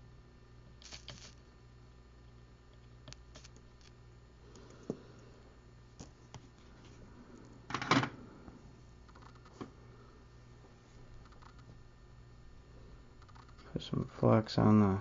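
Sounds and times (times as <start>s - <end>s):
low electrical hum: 0.0s - 15.0s
tools handled on a workbench: 7.7s - 8.2s.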